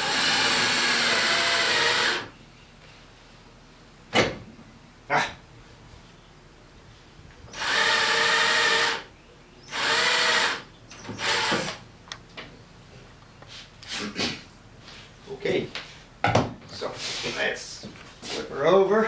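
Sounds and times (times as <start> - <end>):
cordless drill boring wood: 0.0 - 2.3, 7.5 - 9.1, 9.7 - 10.6, 11.2 - 11.8.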